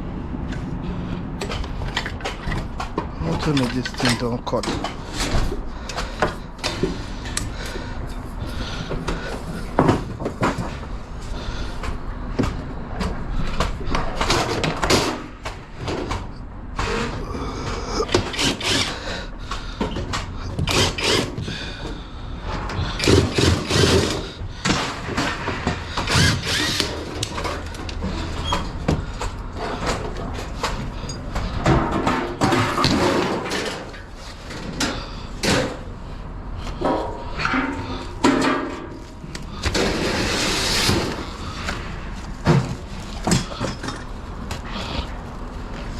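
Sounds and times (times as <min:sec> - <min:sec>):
scrap metal clanking and scraping: 0:01.3 - 0:11.5, 0:22.4 - 0:36.0, 0:36.6 - 0:45.1.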